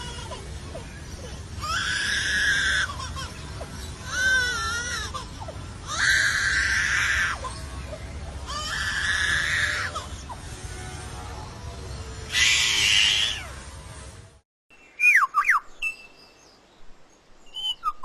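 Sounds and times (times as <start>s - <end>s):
bird mimicking crying baby: 0.0s - 10.4s, 12.3s - 13.5s.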